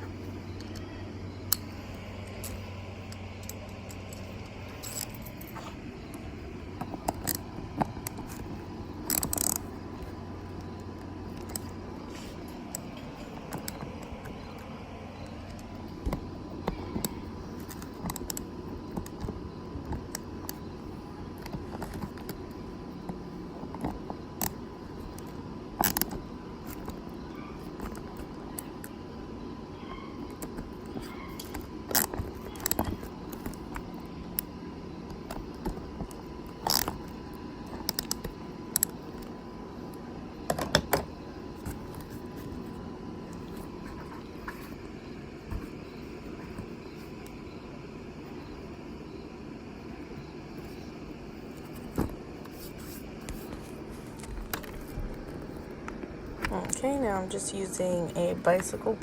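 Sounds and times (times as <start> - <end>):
low steady hum: 0.0 - 59.0
metal parts and tools clinking: 3.4 - 5.8.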